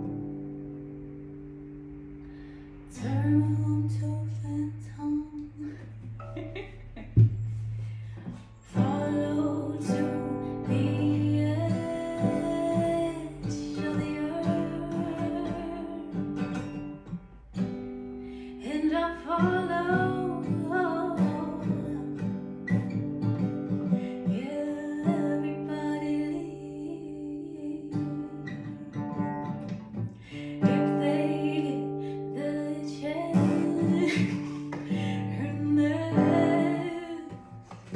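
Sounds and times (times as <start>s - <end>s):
acoustic guitar: 0.0s - 37.9s
person singing: 8.2s - 16.4s, 18.6s - 22.2s, 30.3s - 37.9s.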